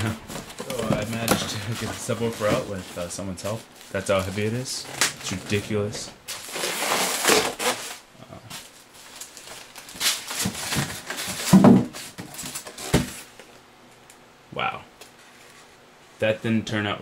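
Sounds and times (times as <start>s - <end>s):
packaging rustling and scraping: 0.0s - 13.6s.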